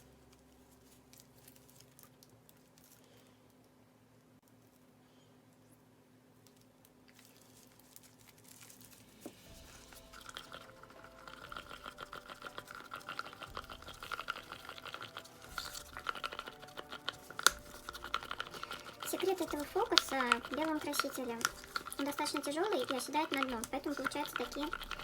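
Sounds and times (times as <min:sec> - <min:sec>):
stick stirring resin in a cup: 0:09.2 - 0:25.0
squeaky scraping against cup: 0:09.8 - 0:25.0.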